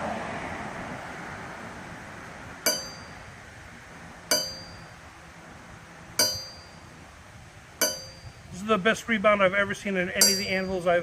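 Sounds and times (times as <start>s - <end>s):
anvil ringing when struck: 2.7s - 3.3s, 4.3s - 5.0s, 6.2s - 6.9s, 7.8s - 8.4s, 10.2s - 10.8s.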